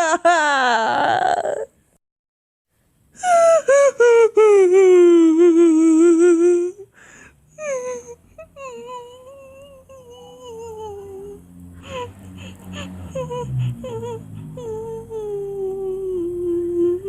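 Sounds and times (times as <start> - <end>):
high wavering crying wail: 7.6 - 17.0.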